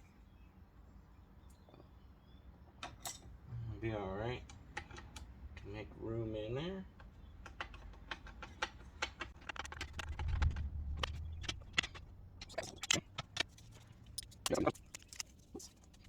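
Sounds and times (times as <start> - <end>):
low rumble: 9.4 - 13.3.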